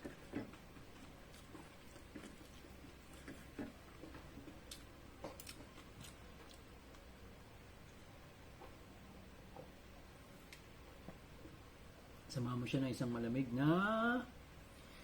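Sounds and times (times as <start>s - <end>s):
person chewing: 0.0s - 7.0s.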